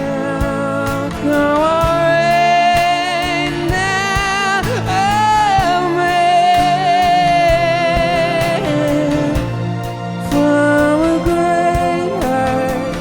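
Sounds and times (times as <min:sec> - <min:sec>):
backing instruments: 0:00.0 - 0:13.0
drums: 0:00.0 - 0:13.0.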